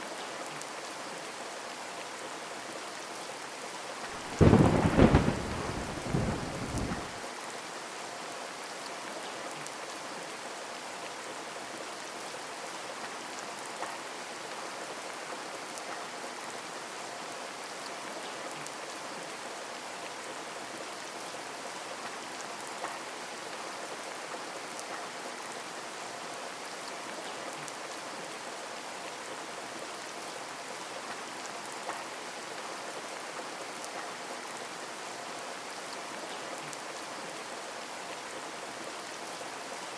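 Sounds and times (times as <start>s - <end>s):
heavy rain falling: 4.0s - 7.5s
thunder rumble: 4.2s - 7.2s.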